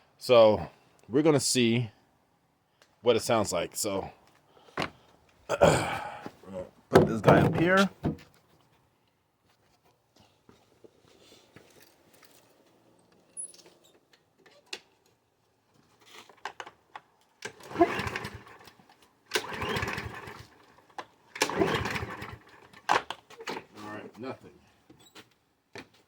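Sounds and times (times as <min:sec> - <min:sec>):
lawnmower engine pull-start: 0:17.4 - 0:23.7.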